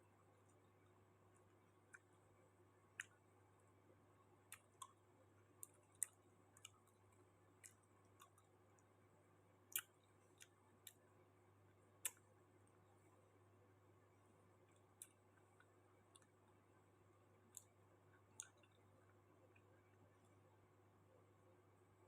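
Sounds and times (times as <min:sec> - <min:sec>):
mouth clicks and smacks eating: 0:02.9 - 0:03.2, 0:04.5 - 0:05.0, 0:05.6 - 0:08.9, 0:09.7 - 0:11.0, 0:12.0 - 0:12.3, 0:14.7 - 0:16.4, 0:17.5 - 0:18.8.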